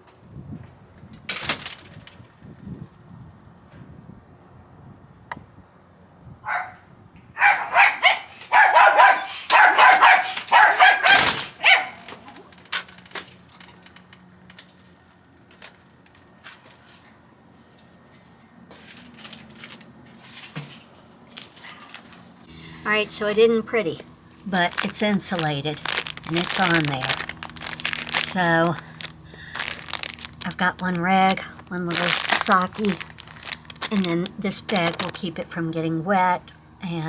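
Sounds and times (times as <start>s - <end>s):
dog barking: 6.4s - 6.8s, 7.4s - 12.1s.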